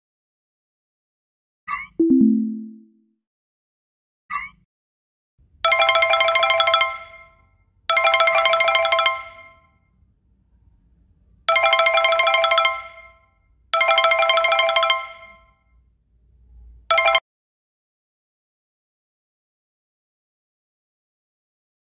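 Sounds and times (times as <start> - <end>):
electronic trill ringtone: 2.0 - 2.9.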